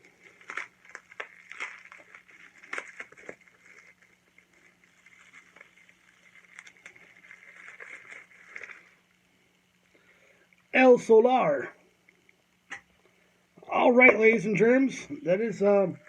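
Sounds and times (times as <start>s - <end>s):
packaging crinkling rustle: 0.0s - 9.3s
packaging clicks and snaps: 0.2s - 4.0s.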